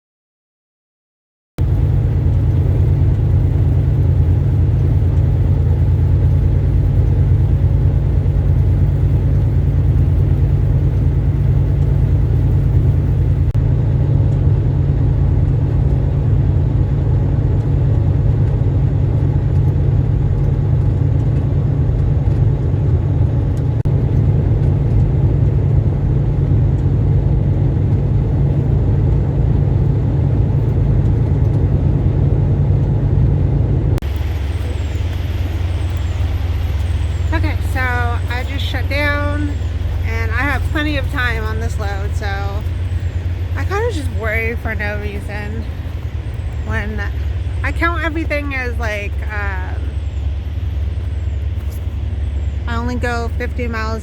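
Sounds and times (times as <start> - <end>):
truck diesel engine droning: 1.6 - 54.0.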